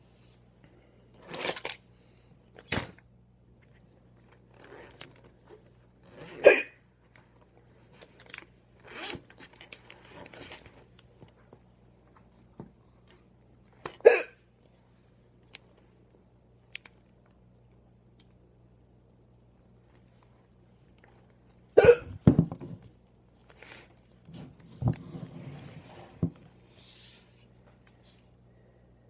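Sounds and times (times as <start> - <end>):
person hiccuping: 6.4 - 6.8, 14.0 - 14.4, 21.8 - 22.2.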